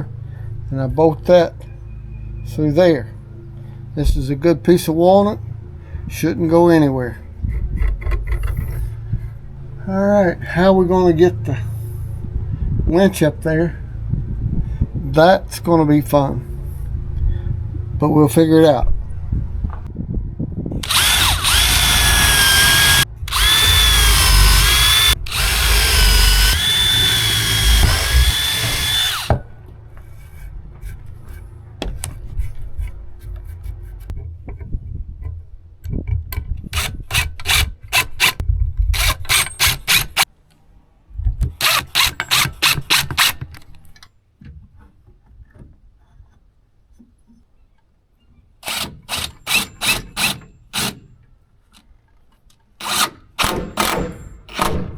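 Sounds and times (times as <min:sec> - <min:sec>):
power drill whining: 0:20.8 - 0:29.4, 0:39.0 - 0:40.2, 0:41.6 - 0:43.6, 0:48.7 - 0:51.0, 0:52.8 - 0:54.7.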